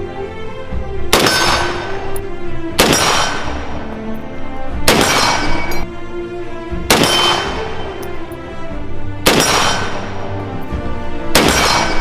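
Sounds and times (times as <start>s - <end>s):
background music: 0.0s - 12.0s
gunshots with ringing tail: 1.1s - 4.2s, 4.8s - 5.9s, 6.9s - 8.4s, 9.2s - 10.6s, 11.2s - 12.0s.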